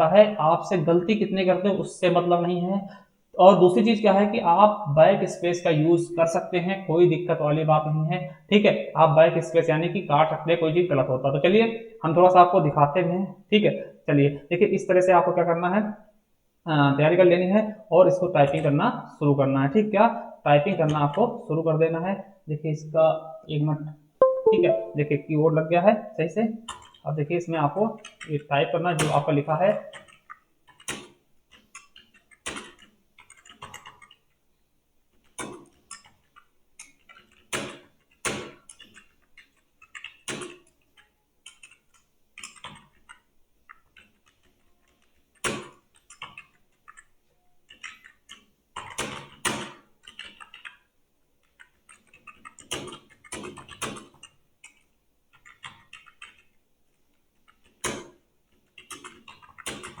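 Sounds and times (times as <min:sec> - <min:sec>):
typing on computer keyboard: 0:29.8 - 0:34.4, 0:35.1 - 1:00.0.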